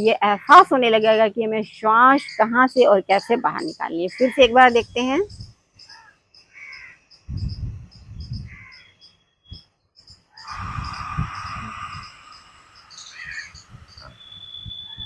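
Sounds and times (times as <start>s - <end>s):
breathy throat exhale: 10.4s - 14.1s.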